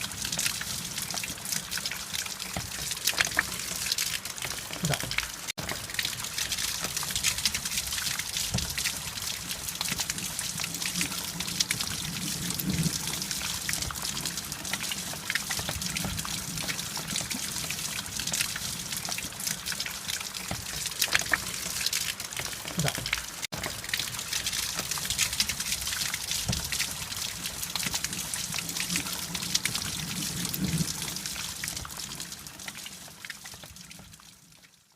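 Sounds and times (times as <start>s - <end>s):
water trickling and splashing: 0.0s - 34.9s.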